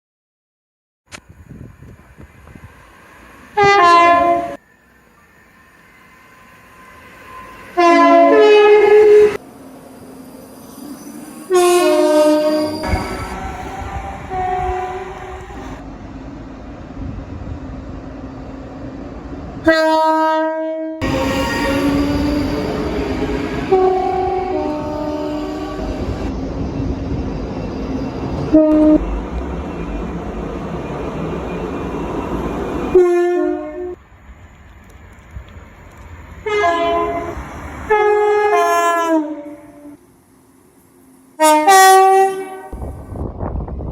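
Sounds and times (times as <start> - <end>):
train running noise: 1.1 - 20.1, 21.0 - 43.9
train two-tone horn: 3.6 - 4.6, 7.3 - 9.4, 11.4 - 15.8, 19.6 - 26.3, 28.5 - 29.2, 32.9 - 34.0, 36.4 - 40.0, 41.4 - 42.8.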